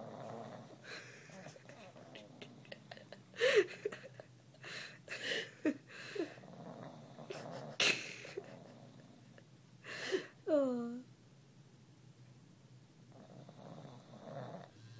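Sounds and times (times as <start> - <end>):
dog snoring: 0.0 - 2.8, 6.2 - 7.8, 13.1 - 14.9.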